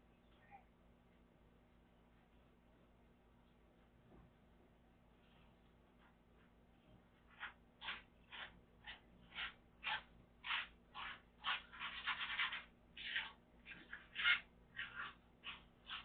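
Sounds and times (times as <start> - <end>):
scrubbing strokes: 7.1 - 16.0.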